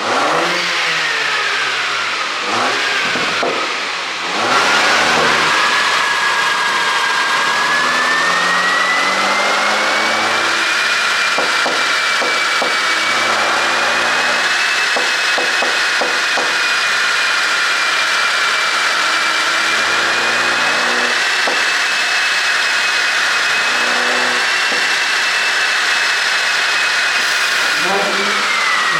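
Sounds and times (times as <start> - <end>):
car engine revving: 0.0 - 28.9
high whine: 27.2 - 28.9.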